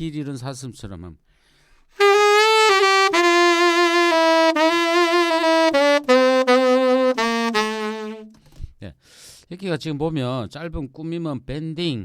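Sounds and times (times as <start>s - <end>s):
solo saxophone: 2.0s - 8.4s.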